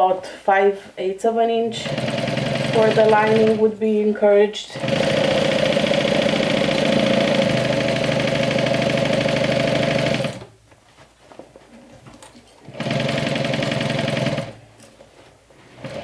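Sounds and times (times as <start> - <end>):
sewing machine stitching: 1.7 - 3.8, 4.8 - 10.5, 12.7 - 14.6, 15.8 - 16.0.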